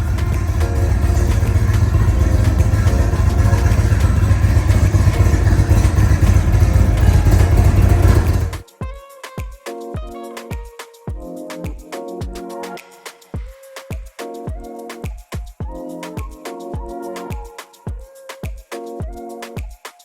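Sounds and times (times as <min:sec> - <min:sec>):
motorcycle engine rumbling: 0:00.0 - 0:08.6
background music with drum beats: 0:00.0 - 0:20.0.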